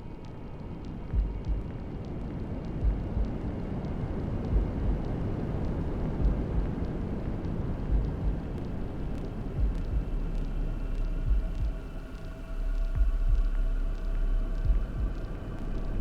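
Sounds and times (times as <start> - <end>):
rumbling white noise: 0.0 - 16.0
heartbeat thumps: 0.8 - 3.6, 4.4 - 7.0, 7.8 - 8.6, 9.5 - 12.0, 12.7 - 16.0.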